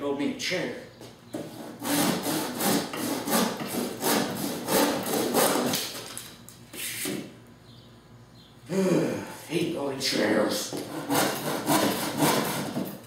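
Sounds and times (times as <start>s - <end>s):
hand saw cutting wood: 1.5s - 5.8s, 10.7s - 13.0s.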